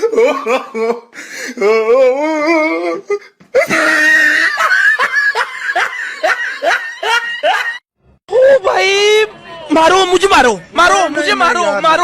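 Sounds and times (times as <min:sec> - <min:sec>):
wavering vocal cry: 0:01.6 - 0:04.8
person shrieking: 0:03.6 - 0:04.6
person laughing loudly: 0:03.6 - 0:07.8.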